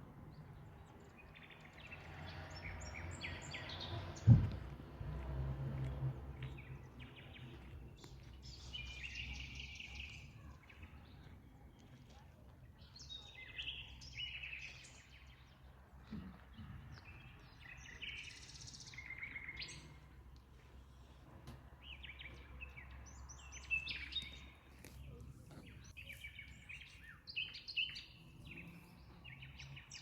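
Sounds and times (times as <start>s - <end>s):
birds chirping and trilling: 0.3s - 4.3s, 6.4s - 11.8s, 21.8s - 30.0s.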